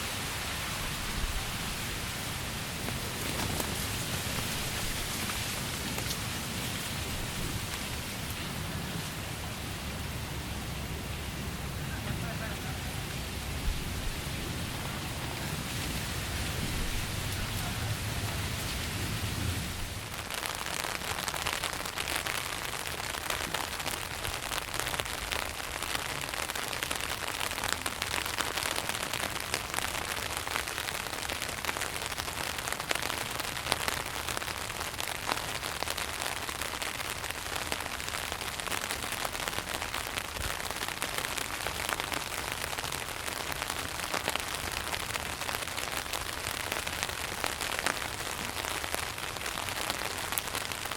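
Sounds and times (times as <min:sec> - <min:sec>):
rain pattering on tent fabric: 0:00.0 - 0:50.9.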